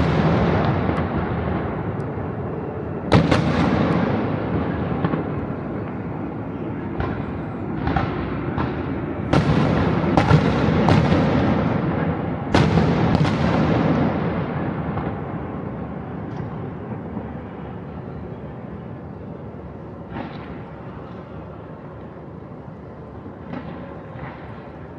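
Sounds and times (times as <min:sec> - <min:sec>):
fireworks exploding: 0:00.0 - 0:01.9, 0:03.0 - 0:06.0, 0:06.9 - 0:15.2
echoing rumble: 0:00.0 - 0:15.4.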